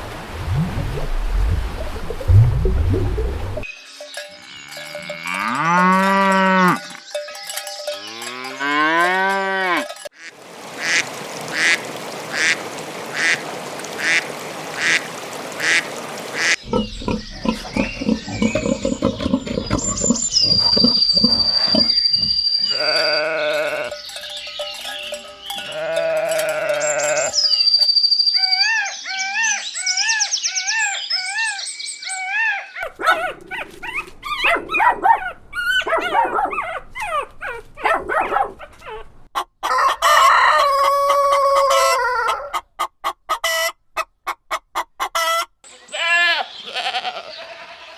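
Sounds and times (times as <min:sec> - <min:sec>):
cattle mooing: 0:05.1 - 0:06.9, 0:08.1 - 0:09.9, 0:16.7 - 0:24.3, 0:25.2 - 0:27.4
livestock calls: 0:16.4 - 0:27.8
quick repeated chirps: 0:17.8 - 0:22.9.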